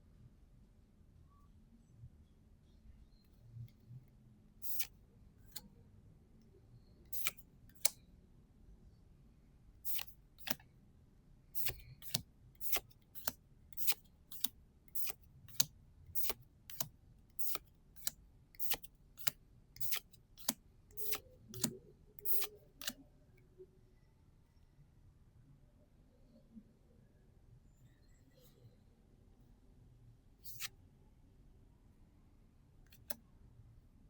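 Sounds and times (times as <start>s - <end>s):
trading cards clicking: 11.6s - 23.0s.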